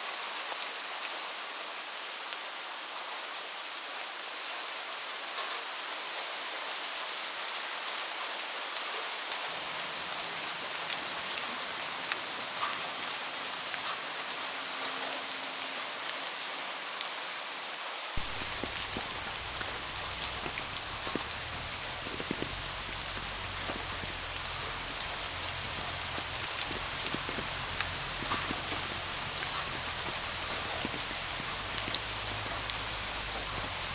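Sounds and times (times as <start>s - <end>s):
rain falling: 0.0s - 33.9s
raindrops ticking sharply: 9.4s - 14.5s, 18.2s - 33.9s
low steady rumble: 18.2s - 33.9s.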